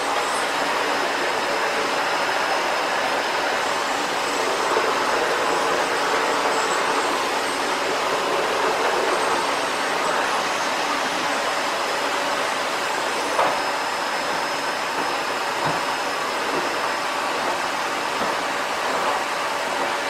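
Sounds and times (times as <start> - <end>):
vacuum cleaner running: 0.0 - 20.0.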